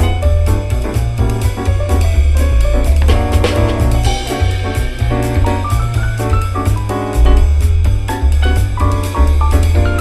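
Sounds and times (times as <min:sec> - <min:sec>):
jazzy instrumental music: 0:00.0 - 0:10.0.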